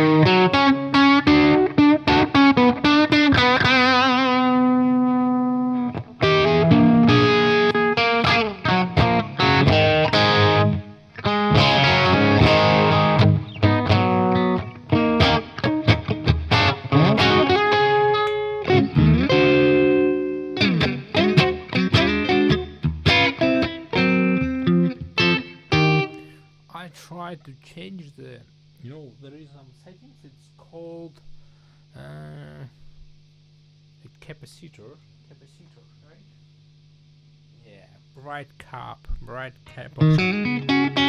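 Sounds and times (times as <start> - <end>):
overdriven electric guitar: 0.0 - 26.4, 40.0 - 41.0.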